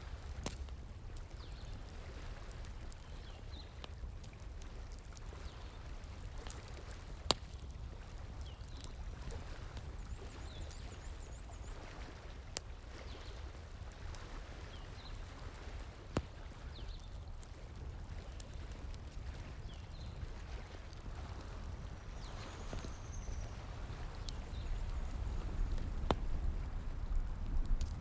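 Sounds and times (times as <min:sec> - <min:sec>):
wood fire crackling: 0:00.0 - 0:10.8, 0:12.3 - 0:28.0
flowing stream: 0:11.6 - 0:28.0
sharp fire pops: 0:21.1 - 0:28.0.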